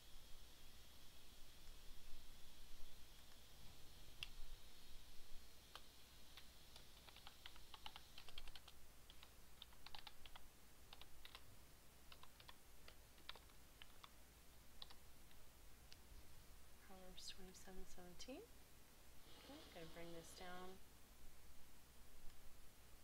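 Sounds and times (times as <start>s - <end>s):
typing on keyboard: 5.7s - 11.4s, 12.1s - 14.2s, 14.8s - 15.0s.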